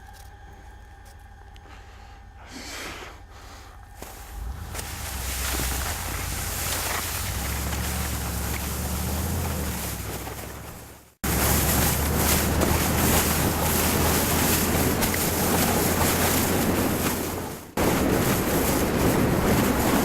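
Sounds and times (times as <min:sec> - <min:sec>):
low steady rumble: 0:00.0 - 0:20.0
wind rushing over microphone: 0:04.3 - 0:20.0.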